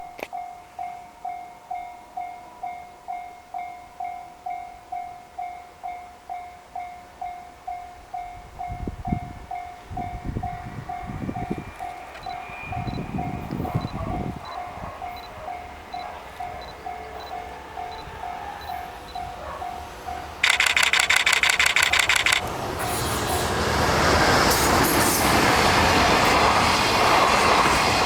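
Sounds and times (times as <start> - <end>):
level crossing warning bell: 0.2 - 22.5
freight train rumble and wheel thumps: 8.4 - 28.0.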